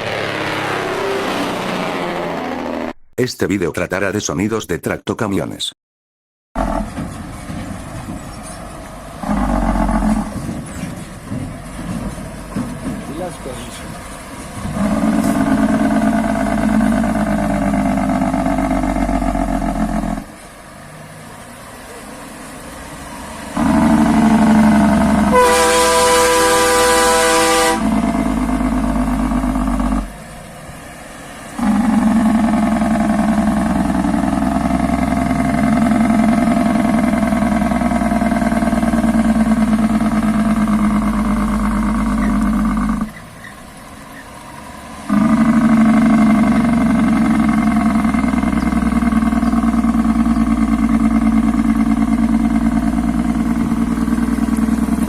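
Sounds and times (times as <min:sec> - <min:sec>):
diesel truck engines running: 0:00.0 - 0:04.7, 0:06.6 - 0:55.0
truck air horn blast: 0:14.7 - 0:16.9, 0:23.6 - 0:28.2, 0:45.1 - 0:46.0.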